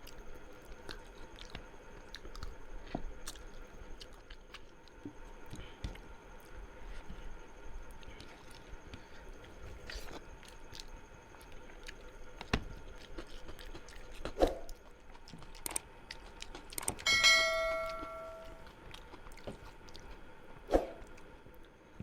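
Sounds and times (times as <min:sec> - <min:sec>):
chewing and mouth clicks: 0:00.0 - 0:21.8
metal dish struck ringing: 0:17.1 - 0:18.6.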